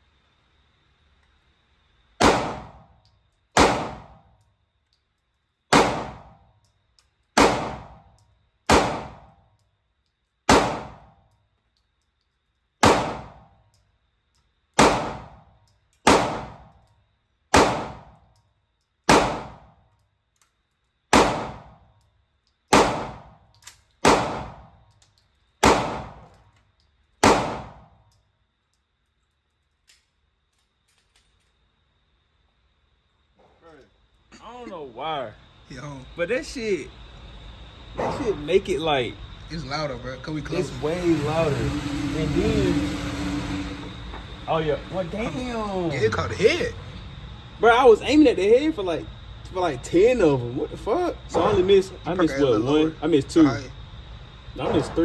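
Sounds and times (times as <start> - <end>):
pistol shots echoing indoors: 2.2 - 2.9, 3.5 - 4.3, 5.7 - 6.4, 7.3 - 8.1, 8.7 - 9.4, 10.5 - 11.1, 12.8 - 13.5, 14.7 - 15.4, 16.0 - 16.9, 17.5 - 18.2, 19.1 - 19.7, 21.1 - 21.8, 22.7 - 24.8, 25.6 - 26.4, 27.2 - 27.9.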